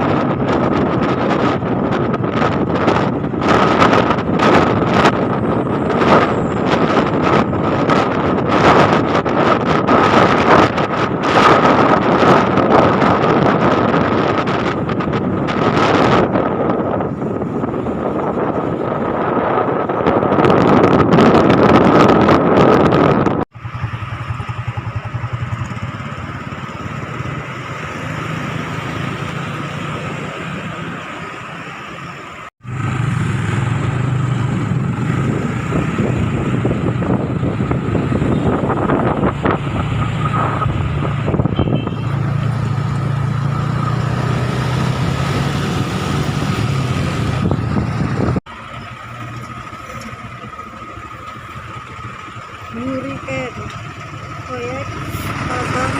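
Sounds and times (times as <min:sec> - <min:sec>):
road and wind noise: 0:00.0 - 0:55.9
vehicle engine running: 0:23.5 - 0:29.2, 0:47.3 - 0:55.9.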